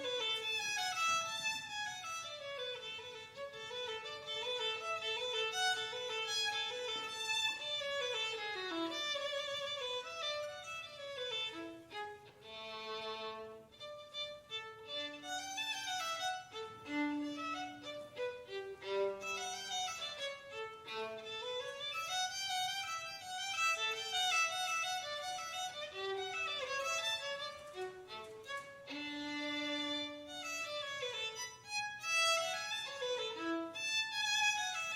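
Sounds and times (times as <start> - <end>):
violin melody: 0.0 - 34.9.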